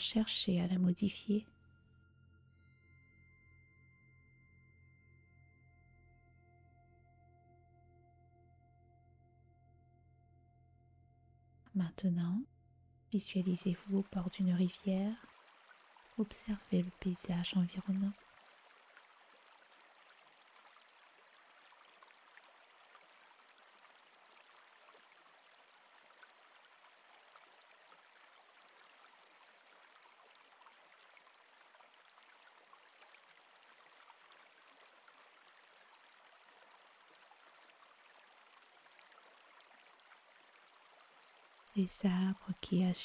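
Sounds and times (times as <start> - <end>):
faint flowing river water: 0.0 - 3.5, 13.2 - 43.0.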